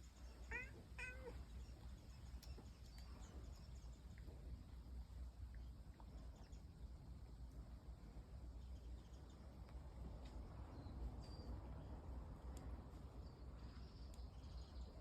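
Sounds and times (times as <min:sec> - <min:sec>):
low steady hum: 0:00.0 - 0:15.0
cat meowing faintly: 0:00.5 - 0:01.4.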